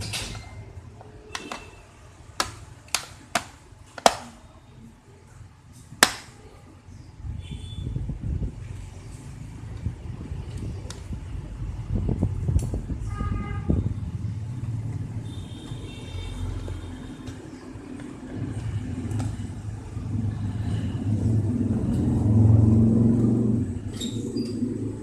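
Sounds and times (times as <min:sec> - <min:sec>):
vehicle engine rumbling: 0:07.2 - 0:25.0.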